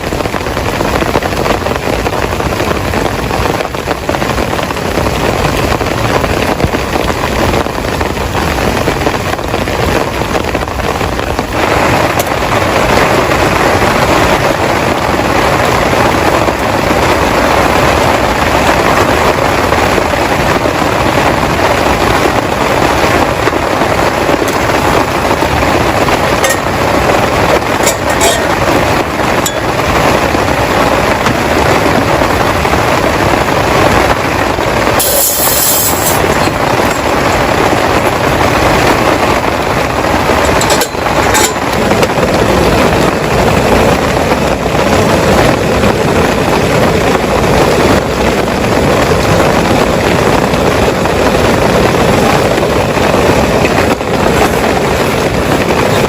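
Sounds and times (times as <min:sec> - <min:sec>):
heavy rain falling: 0:00.0 - 0:56.0
sharp high hiss: 0:35.0 - 0:36.2.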